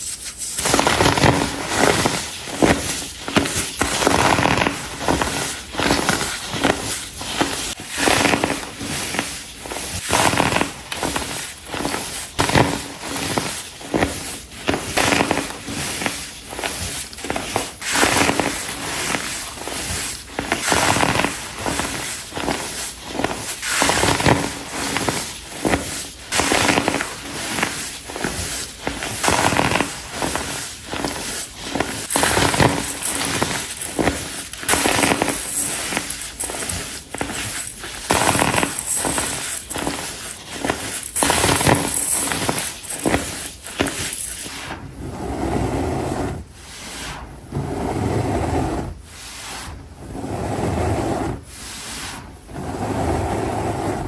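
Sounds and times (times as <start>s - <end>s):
baking soda blocks crunching: 0.0s - 44.5s
powder crumbling and rubbing: 0.0s - 54.0s.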